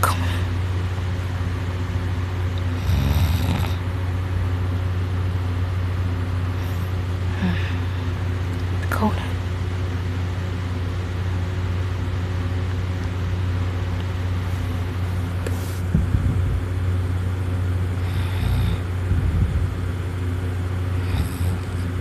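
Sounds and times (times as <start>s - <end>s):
steady low hum: 0.0s - 22.0s
person snoring heavily: 2.7s - 3.8s, 6.6s - 8.0s, 18.0s - 19.6s, 20.9s - 22.0s.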